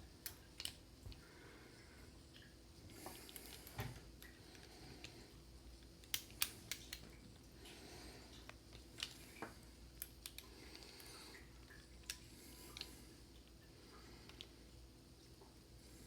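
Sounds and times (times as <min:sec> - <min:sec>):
small metal parts clicking: 0:00.2 - 0:00.8, 0:10.0 - 0:11.1.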